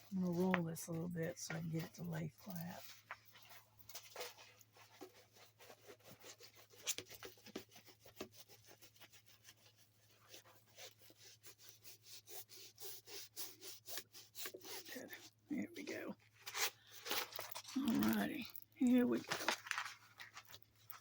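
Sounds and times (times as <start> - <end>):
canvas rustling and crinkling: 0.0 - 8.2, 14.6 - 21.0.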